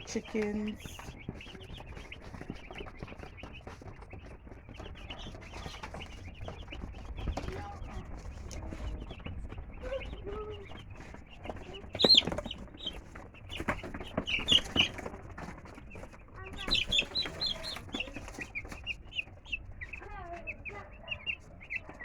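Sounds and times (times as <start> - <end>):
chicks peeping: 0.0 - 22.0
sharp taps: 11.0 - 18.8.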